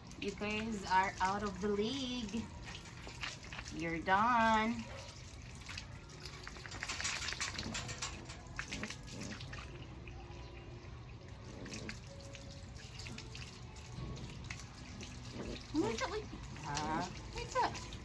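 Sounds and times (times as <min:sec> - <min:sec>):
running water: 0:00.0 - 0:18.0
small clicks and rustles: 0:06.2 - 0:09.2.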